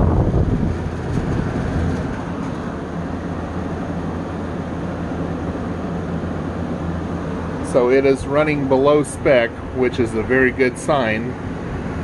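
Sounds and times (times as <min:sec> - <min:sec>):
box fan running: 0:00.0 - 0:12.0.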